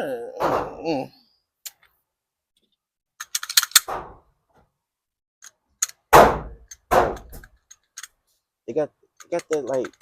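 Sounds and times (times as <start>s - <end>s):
pistol slide clicks and clacks: 3.2s - 3.9s, 5.4s - 8.2s, 9.2s - 10.0s
loud sharp knock: 6.1s - 7.3s.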